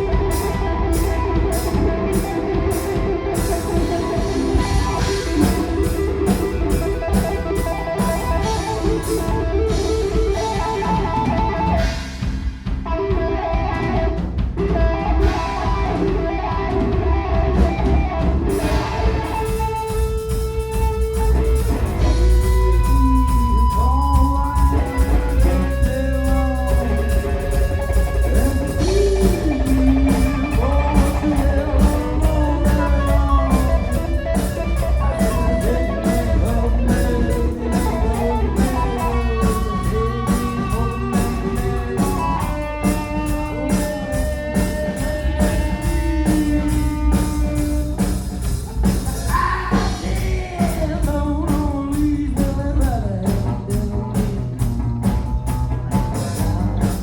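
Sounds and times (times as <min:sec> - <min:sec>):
bass guitar: 0:00.0 - 0:57.0
drum kit beat: 0:00.0 - 0:57.0
lead guitar with bent notes: 0:00.0 - 0:57.0.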